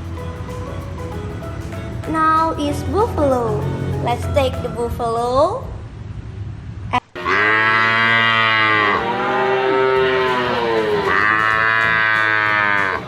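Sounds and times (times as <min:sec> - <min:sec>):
buffalo lowing: 0:07.2 - 0:13.0.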